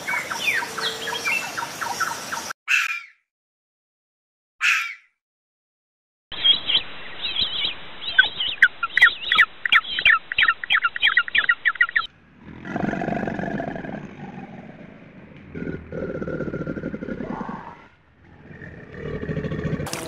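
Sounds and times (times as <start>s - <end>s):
bird chirping rapidly: 6.3s - 12.1s
deep steady animal sound: 11.9s - 19.9s.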